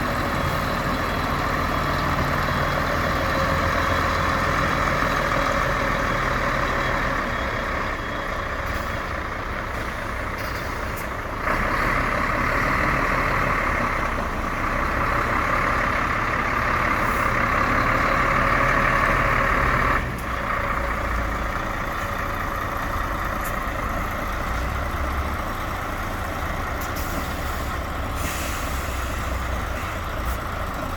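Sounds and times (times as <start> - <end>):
concrete pump engine hum: 0.0 - 30.9
loud hiss: 27.1 - 29.4.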